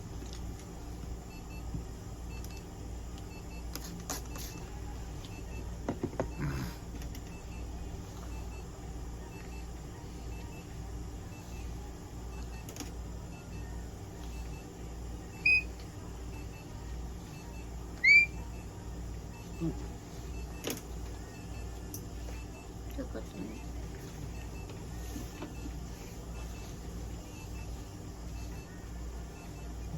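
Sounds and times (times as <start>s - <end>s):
low machine hum: 0.0s - 29.9s
guinea pig squeaks: 15.4s - 15.7s, 18.0s - 18.4s.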